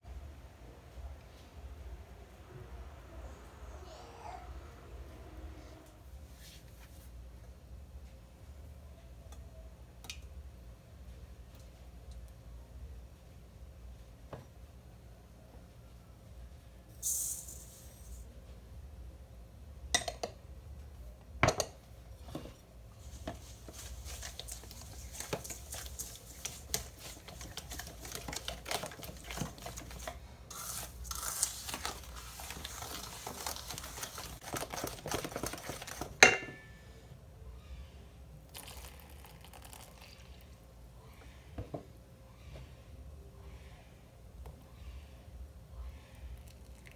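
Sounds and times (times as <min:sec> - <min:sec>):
utensil scraping in mixing bowl: 0:22.4 - 0:36.2.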